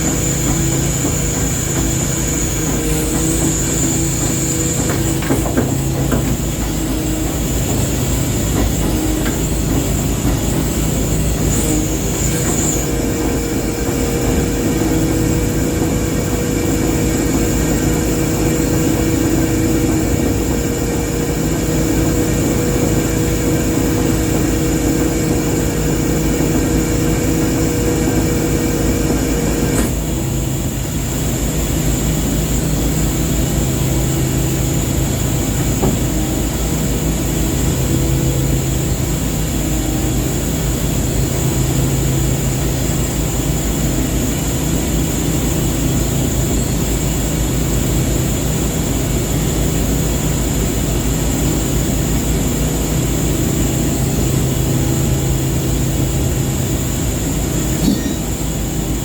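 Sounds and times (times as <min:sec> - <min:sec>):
ship engine drone: 0:00.0 - 0:59.0
high whine: 0:50.4 - 0:59.0.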